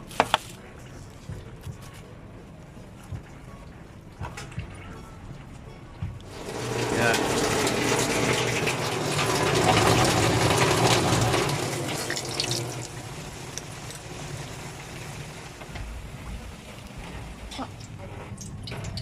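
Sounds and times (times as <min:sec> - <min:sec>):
running water: 0:06.3 - 0:19.0.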